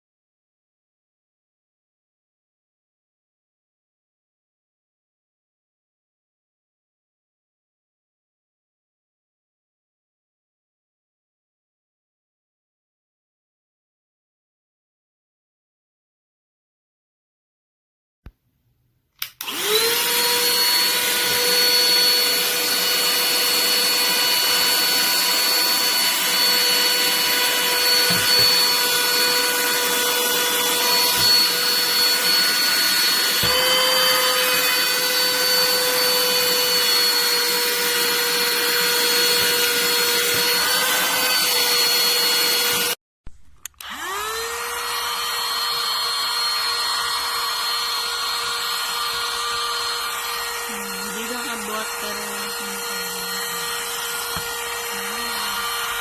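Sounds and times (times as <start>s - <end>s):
handheld vacuum cleaner motor whine: 19.2s - 43.0s, 43.6s - 56.0s.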